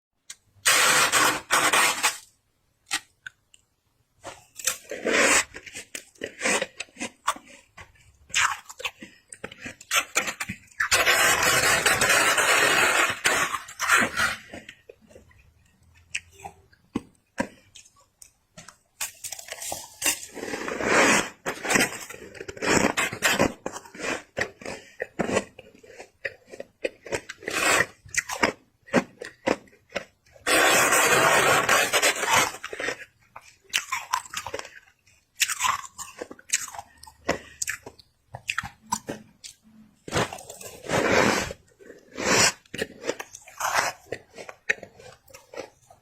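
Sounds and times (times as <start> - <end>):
chewing frost crunches: 32.3 - 41.1, 41.7 - 46.0.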